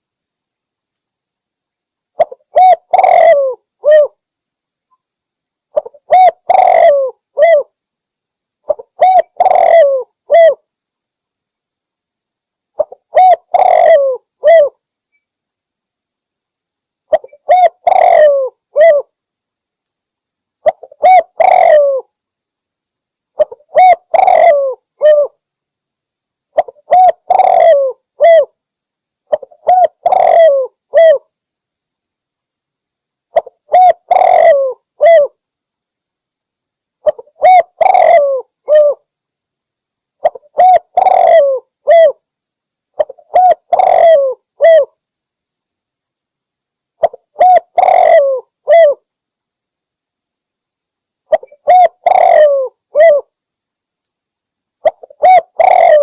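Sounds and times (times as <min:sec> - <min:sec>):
dove cooing: 0:02.2 - 0:04.2, 0:05.8 - 0:07.7, 0:08.7 - 0:10.6, 0:12.8 - 0:14.8, 0:17.1 - 0:19.1, 0:20.6 - 0:22.1, 0:23.4 - 0:25.4, 0:26.6 - 0:28.5, 0:29.3 - 0:31.3, 0:33.4 - 0:35.4, 0:37.0 - 0:39.0, 0:40.2 - 0:42.2, 0:43.0 - 0:44.9, 0:47.0 - 0:49.0, 0:51.3 - 0:53.3, 0:54.8 - 0:56.0.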